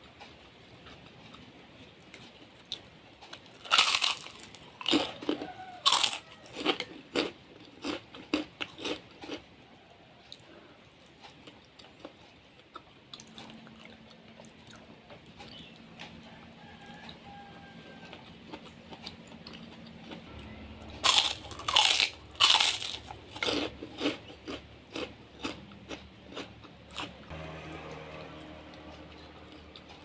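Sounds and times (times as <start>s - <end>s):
person chewing crunchy food: 0.8s - 30.0s.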